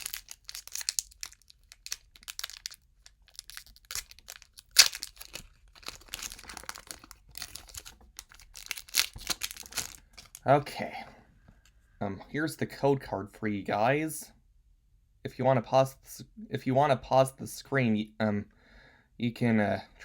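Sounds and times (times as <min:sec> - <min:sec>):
foil wrapper crinkling and tearing: 0:00.0 - 0:10.5.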